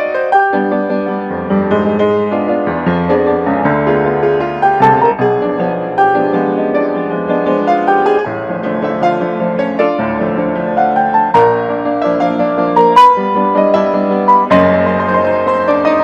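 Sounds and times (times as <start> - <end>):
gentle piano music: 0.0 - 16.0.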